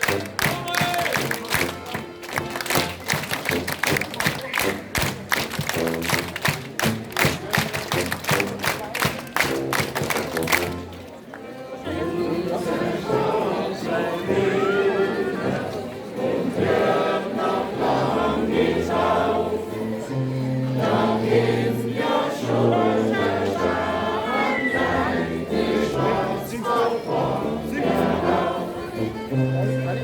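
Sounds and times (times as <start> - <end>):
many voices singing: 11.8 - 29.2.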